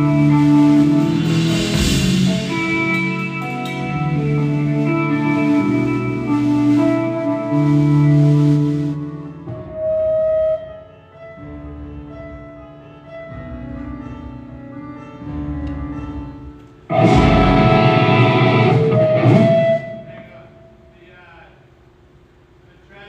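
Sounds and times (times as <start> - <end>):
live band playing: 0.0 - 11.0, 13.9 - 20.8
cymbal wash: 16.9 - 21.3.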